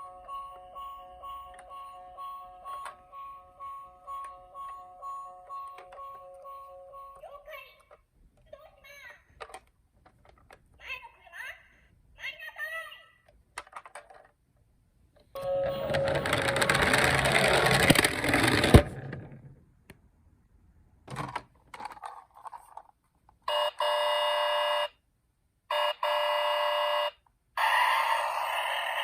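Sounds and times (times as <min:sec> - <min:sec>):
toy electronic siren: 0:00.0 - 0:07.4, 0:25.7 - 0:29.0
toy car rolling with rattling rumble: 0:15.4 - 0:19.6.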